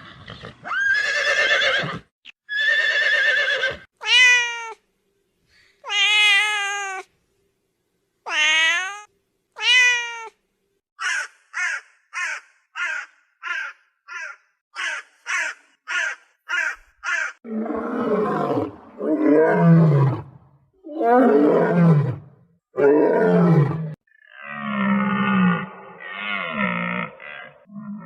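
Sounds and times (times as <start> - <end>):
large animal roaring: 17.5 - 28.0.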